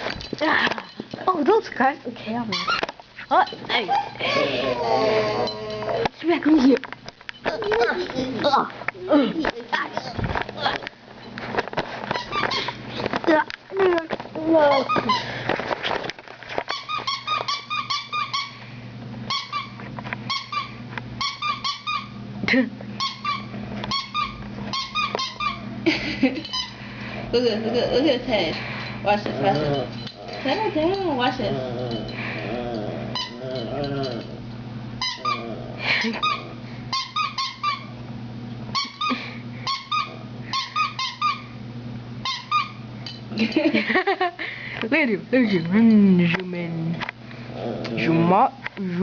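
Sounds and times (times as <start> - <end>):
steady low hum: 0.0 - 49.0
dog squeaking: 2.5 - 2.8, 12.1 - 12.7, 14.6 - 15.3, 16.7 - 18.6, 19.3 - 22.2, 23.0 - 25.7, 33.1 - 33.4, 35.0 - 35.5, 36.1 - 38.0, 38.7 - 41.6, 42.2 - 42.8.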